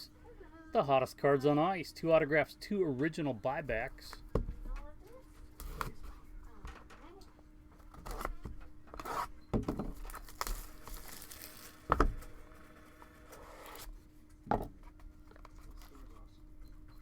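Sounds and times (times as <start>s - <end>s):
cardboard and plastic wrap tearing: 7.9s - 9.3s, 10.0s - 12.4s
box knocks: 11.9s - 12.3s, 14.5s - 14.8s.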